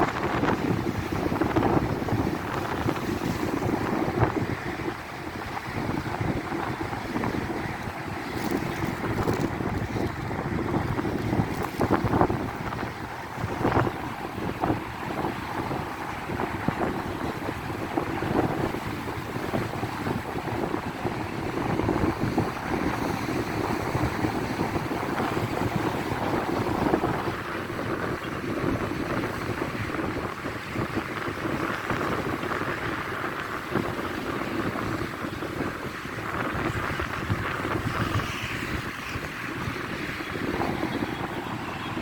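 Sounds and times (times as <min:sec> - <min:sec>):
sea waves rushing: 0:00.0 - 0:42.0
wind buffeting microphone: 0:00.0 - 0:42.0.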